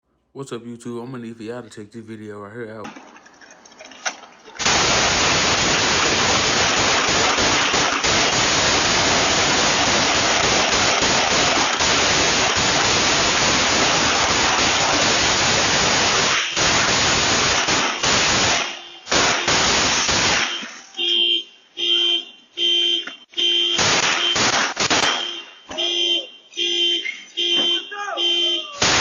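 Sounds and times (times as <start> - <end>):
loud steady hiss: 4.6 - 20.5.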